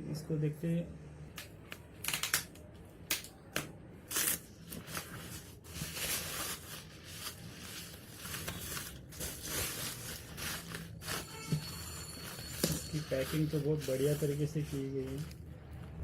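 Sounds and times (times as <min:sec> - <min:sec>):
packaging rustling and crinkling: 0:04.1 - 0:15.4.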